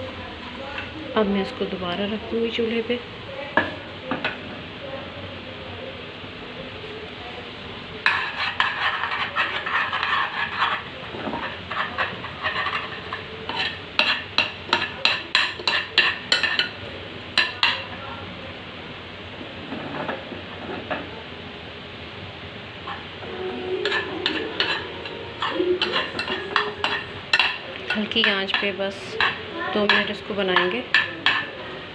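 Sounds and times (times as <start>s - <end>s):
spoon scraping in a pan: 8.0s - 17.9s, 19.5s - 21.1s, 22.8s - 31.8s.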